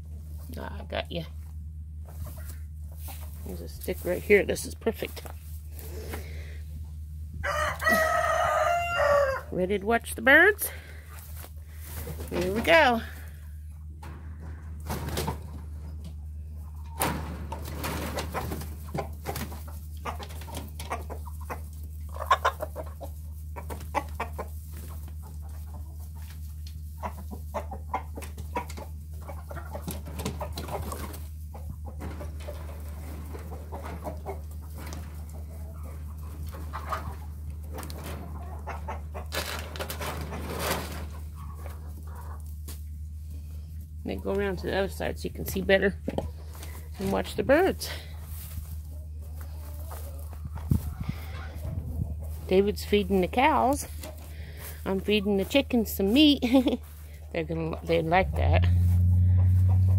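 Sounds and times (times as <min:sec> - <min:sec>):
chickens clucking and squawking: 0:00.0 - 0:59.9
low hum: 0:09.4 - 0:22.2, 0:54.0 - 0:59.9.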